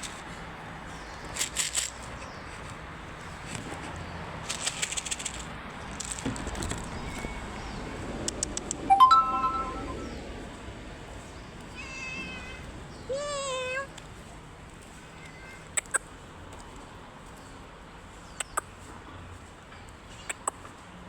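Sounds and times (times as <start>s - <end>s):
crackly clicks and rustling: 1.2s - 7.3s, 8.2s - 8.8s
cat meowing: 11.7s - 13.9s.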